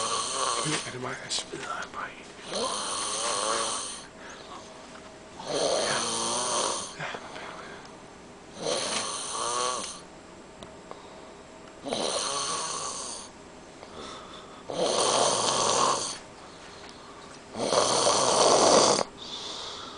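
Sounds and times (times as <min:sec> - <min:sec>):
man snoring: 0:00.0 - 0:00.8, 0:02.4 - 0:04.1, 0:05.4 - 0:07.1, 0:08.6 - 0:10.1, 0:11.8 - 0:13.3, 0:14.6 - 0:16.2, 0:17.5 - 0:19.9.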